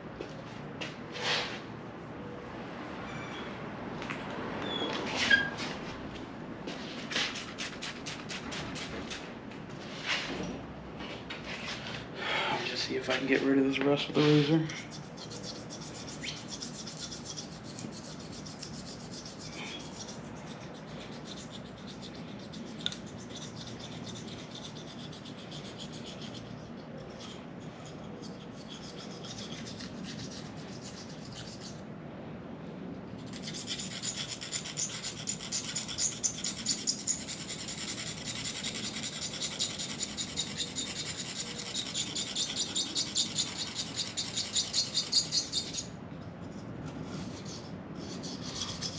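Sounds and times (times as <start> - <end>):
razor blade scraping metal: 14.2 - 31.8, 33.2 - 48.9.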